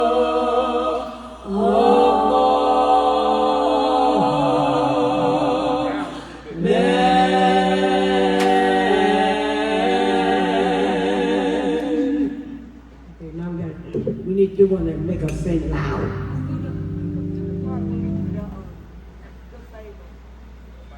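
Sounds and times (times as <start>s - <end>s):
women singing a cappella harmony: 0.0s - 13.1s.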